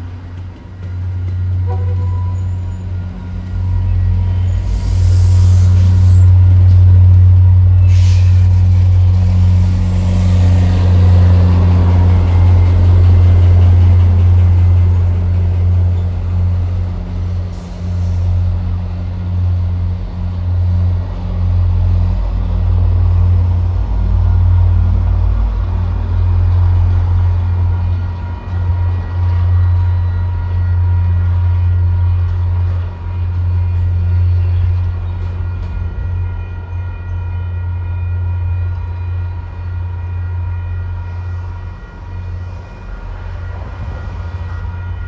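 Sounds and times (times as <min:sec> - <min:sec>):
diesel locomotive rumbling: 0:00.0 - 0:45.0
air brake hisses: 0:04.6 - 0:06.4, 0:07.8 - 0:08.9, 0:17.6 - 0:18.4.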